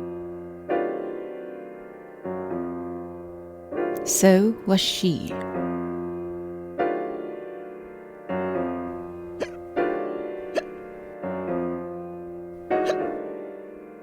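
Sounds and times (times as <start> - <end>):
slow piano chords: 0.0 - 14.0
person hiccuping: 12.8 - 13.1.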